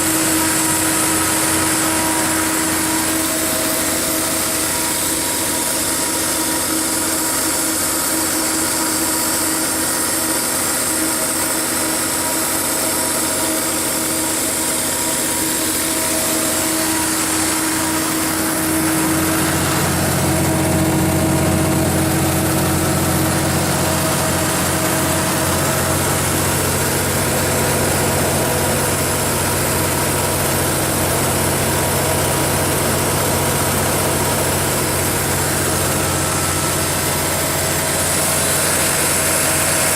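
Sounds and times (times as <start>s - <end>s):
deep hum: 0.0s - 5.0s, 16.1s - 30.4s
diesel generator running: 0.0s - 39.9s.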